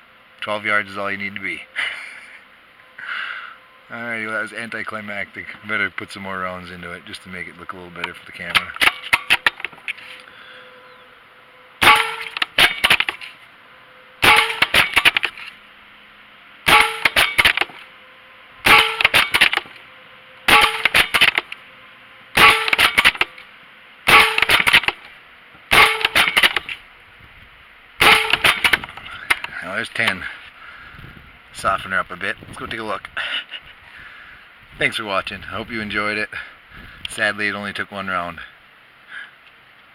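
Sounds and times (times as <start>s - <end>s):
air rifle shots: 8.5s - 9.9s, 11.8s - 13.3s, 14.2s - 15.5s, 16.7s - 17.8s, 18.6s - 19.8s, 20.5s - 21.5s, 22.4s - 23.4s, 24.1s - 25.1s, 25.7s - 26.8s, 28.0s - 29.5s.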